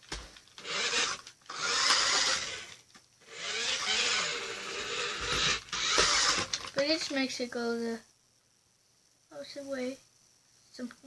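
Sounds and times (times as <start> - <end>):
toy car motor whirring: 0.6 - 7.1.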